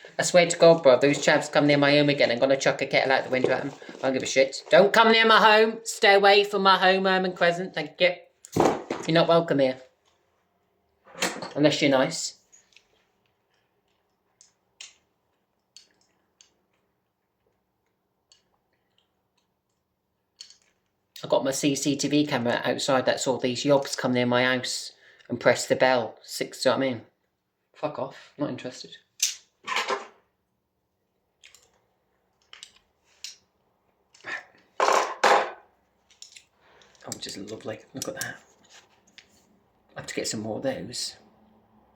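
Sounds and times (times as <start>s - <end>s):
packaging rustling: 2.2s - 5.0s.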